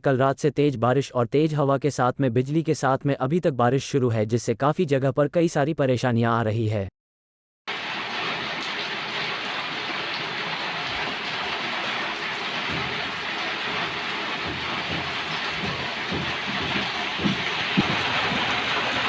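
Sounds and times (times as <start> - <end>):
heavy rain in wind: 7.7 - 19.0
low rumbles and thumps: 12.4 - 19.0.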